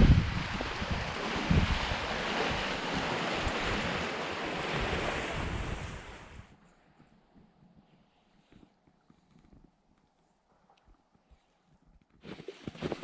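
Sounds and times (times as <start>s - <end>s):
wind rushing: 0.0s - 6.5s
wind buffeting microphone: 0.0s - 6.6s
waves: 0.0s - 9.2s.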